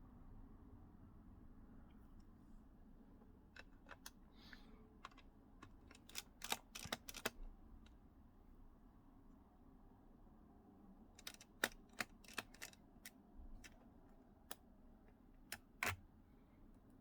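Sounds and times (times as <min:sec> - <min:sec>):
screwdriver clicking on screws: 0:05.0 - 0:07.4, 0:11.2 - 0:12.8, 0:15.5 - 0:16.0.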